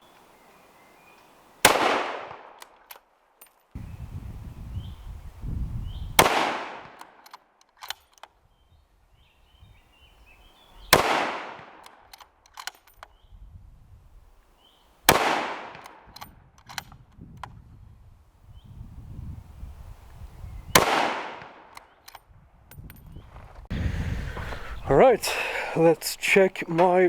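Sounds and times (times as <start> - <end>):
rifle shots with echo: 1.6 - 2.6, 6.2 - 7.0, 10.9 - 11.8, 15.1 - 16.1, 20.8 - 21.7.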